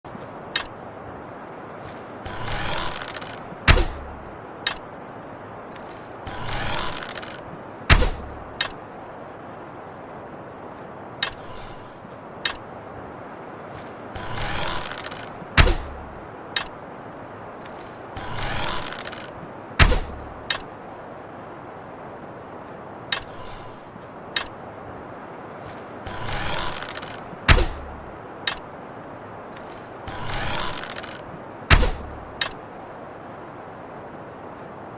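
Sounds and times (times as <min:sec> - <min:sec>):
rustle: 0:00.0 - 0:34.9
steady hiss: 0:00.1 - 0:34.9
bow creaking draw: 0:01.8 - 0:04.8, 0:05.7 - 0:08.8, 0:11.2 - 0:12.6, 0:13.7 - 0:16.8, 0:17.6 - 0:20.7, 0:23.1 - 0:24.6, 0:25.6 - 0:28.7, 0:29.5 - 0:32.6
arrow crack with deep thud: 0:03.6 - 0:04.1, 0:06.7 - 0:08.4, 0:15.6 - 0:16.0, 0:19.8 - 0:20.2, 0:27.5 - 0:27.9, 0:30.4 - 0:32.2.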